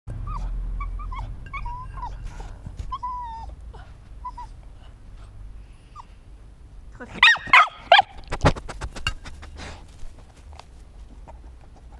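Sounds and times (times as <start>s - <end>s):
dog whining: 0.1s - 5.0s.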